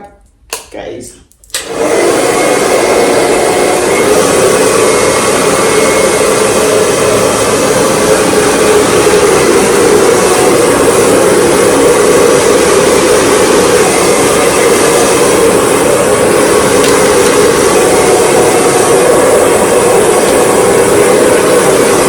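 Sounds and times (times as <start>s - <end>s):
hair dryer running: 1.5s - 22.0s.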